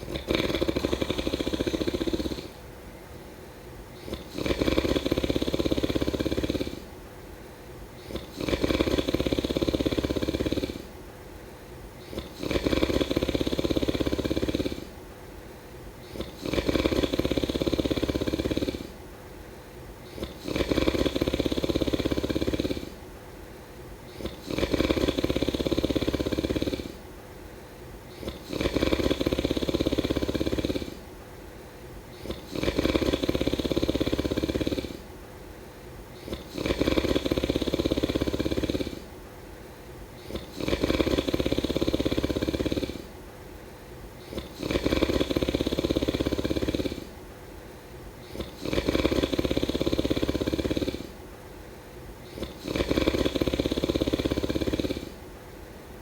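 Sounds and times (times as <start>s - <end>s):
person snoring: 0.0s - 2.6s, 4.0s - 6.9s, 8.0s - 10.9s, 12.0s - 15.0s, 16.0s - 19.0s, 20.0s - 23.0s, 24.1s - 27.0s, 28.1s - 31.1s, 32.1s - 35.1s, 36.1s - 39.1s, 40.2s - 43.1s, 44.2s - 47.2s, 48.2s - 51.2s, 52.2s - 55.2s
quiet breaths: 0.0s - 56.0s.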